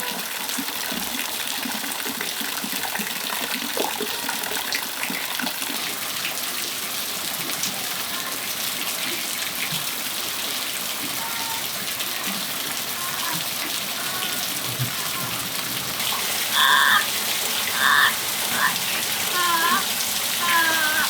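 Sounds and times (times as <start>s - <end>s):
rain falling on a patio: 0.0s - 21.0s
parrot calls: 16.0s - 21.0s.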